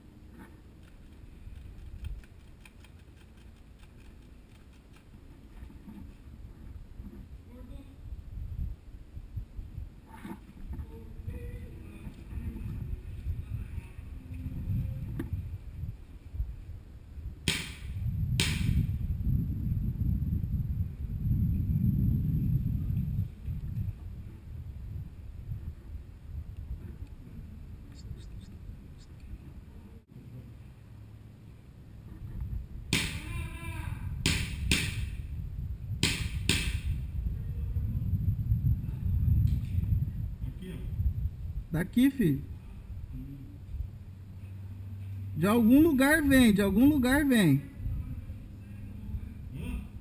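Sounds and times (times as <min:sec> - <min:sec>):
wind rumble on microphone: 0:00.0 - 0:50.0
airsoft gun shots: 0:17.5 - 0:18.9, 0:32.9 - 0:33.3, 0:34.2 - 0:35.2, 0:36.0 - 0:37.0.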